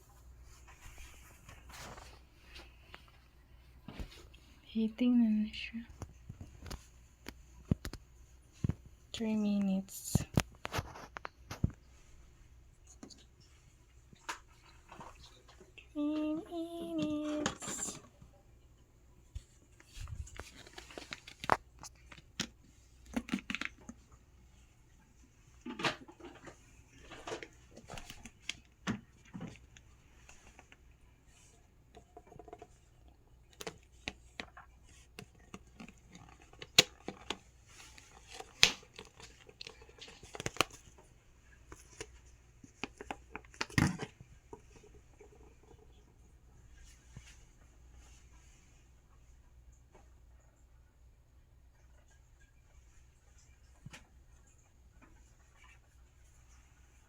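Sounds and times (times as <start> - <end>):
crinkling rustles: 0.0 - 4.6, 10.0 - 18.4, 19.2 - 48.8.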